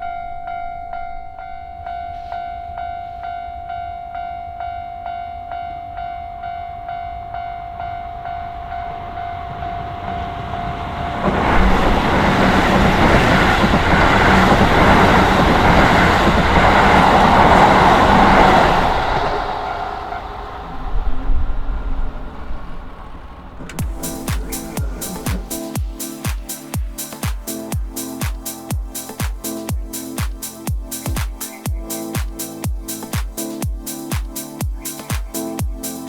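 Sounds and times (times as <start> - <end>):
level crossing alarm dinging: 0.0 - 18.0, 23.7 - 27.9
train passing: 0.0 - 36.0.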